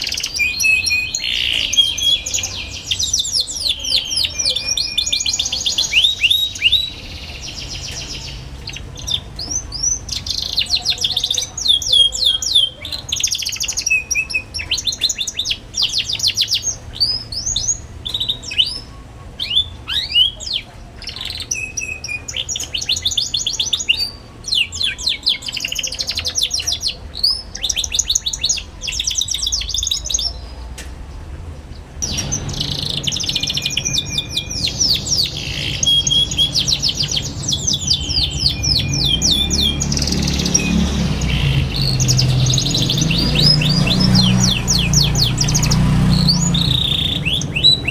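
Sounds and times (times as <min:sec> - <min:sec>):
canary singing: 0:00.0 - 0:30.9, 0:31.6 - 0:47.9.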